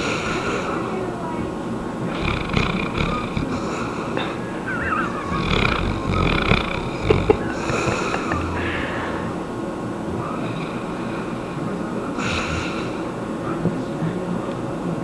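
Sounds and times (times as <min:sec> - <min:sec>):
puppy snoring: 0:02.1 - 0:08.6, 0:12.2 - 0:13.0.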